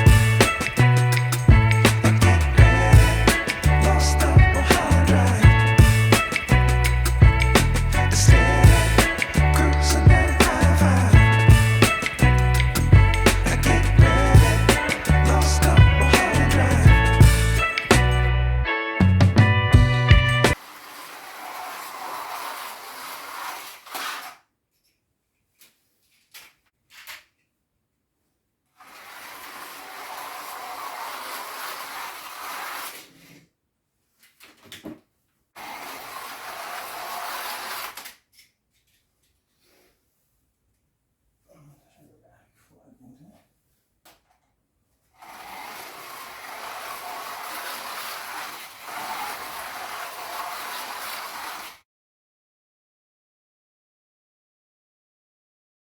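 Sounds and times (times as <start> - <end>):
slot cars whirring on track: 29.0 - 32.9, 45.3 - 51.7.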